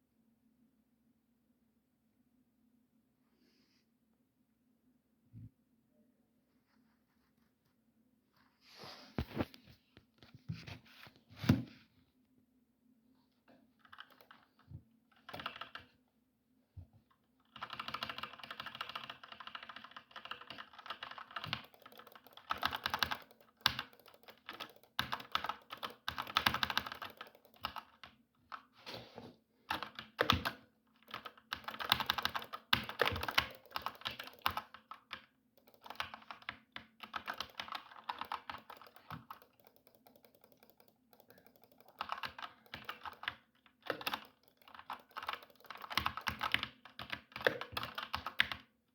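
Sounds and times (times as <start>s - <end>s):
typing on computer keyboard: 13.8s - 15.9s, 17.4s - 28.6s, 29.7s - 48.7s.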